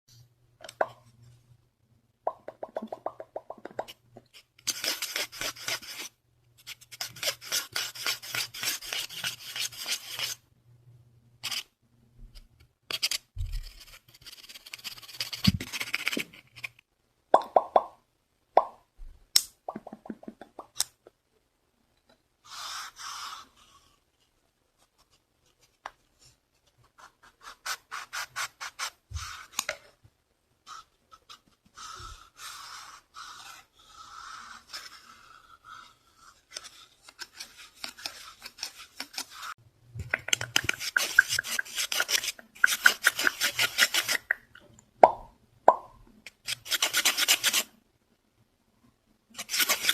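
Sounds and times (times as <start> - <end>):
scratching and rubbing on a surface: 4.3 - 10.4, 12.9 - 16.8, 24.8 - 29.6, 30.6 - 39.6, 40.2 - 44.3, 46.4 - 47.7, 49.4 - 49.9.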